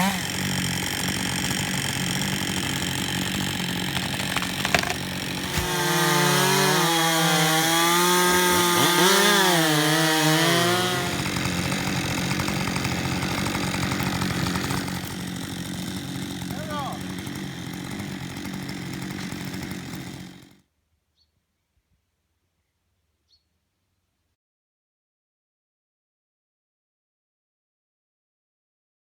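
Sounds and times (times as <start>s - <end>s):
two-stroke chainsaw cutting: 0.0s - 20.6s.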